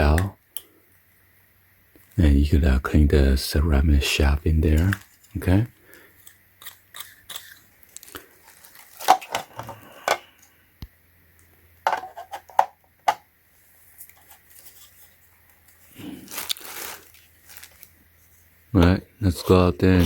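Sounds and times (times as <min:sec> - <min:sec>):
plastic parts clicking and knocking: 0:08.9 - 0:10.5, 0:11.8 - 0:13.3.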